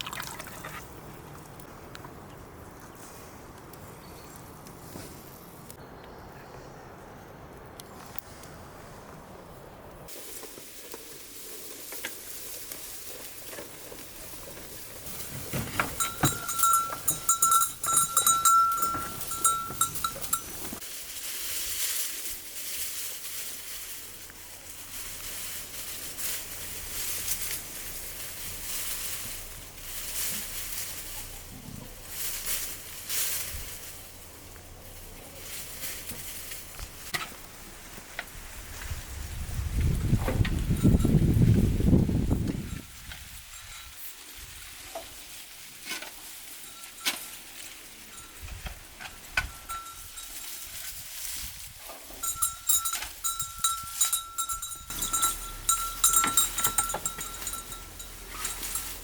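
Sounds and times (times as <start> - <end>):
shuffling and rustling: 10.0 - 59.0
livestock bells clanking: 15.1 - 20.8, 40.6 - 41.6, 46.5 - 50.8, 52.2 - 59.0.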